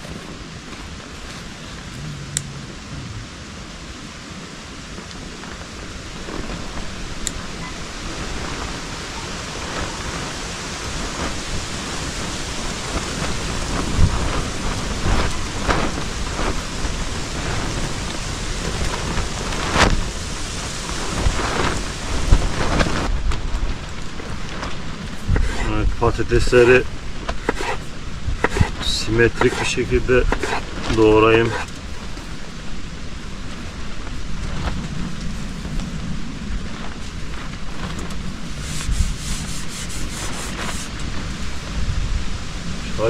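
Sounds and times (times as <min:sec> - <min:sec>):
rain and wind rushing: 0:00.0 - 0:43.0
sudden low thumps: 0:01.6 - 0:03.8.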